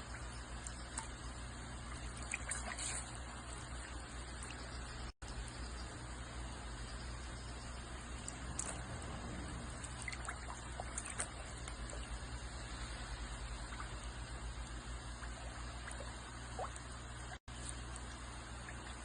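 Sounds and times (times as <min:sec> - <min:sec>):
water trickling: 0:00.0 - 0:19.0.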